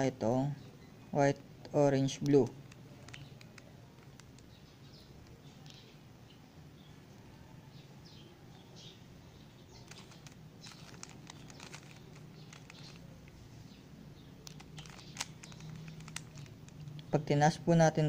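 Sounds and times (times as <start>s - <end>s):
puzzle cube plastic clicking: 2.2s - 4.6s, 9.8s - 13.4s, 14.4s - 17.1s
faint bird chirps: 2.6s - 17.2s.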